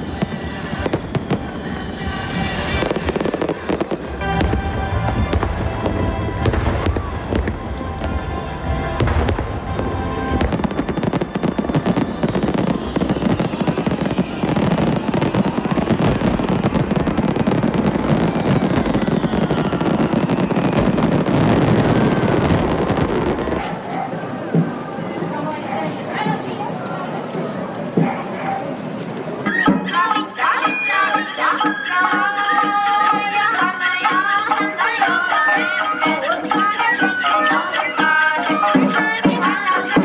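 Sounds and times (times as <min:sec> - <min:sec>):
firecrackers crackling: 0:00.0 - 0:29.6.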